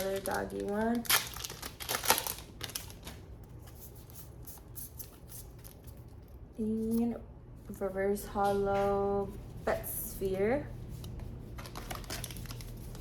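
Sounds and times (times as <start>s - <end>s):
trading cards rustling and flicking: 11.0s - 13.0s.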